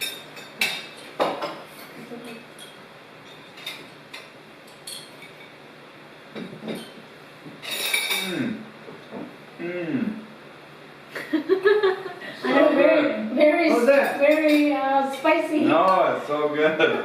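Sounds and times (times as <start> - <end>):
cutlery clinking on dishes: 0.0 - 5.6, 6.4 - 7.0, 7.6 - 8.4, 13.8 - 16.0
breathy exclamation: 9.6 - 10.2.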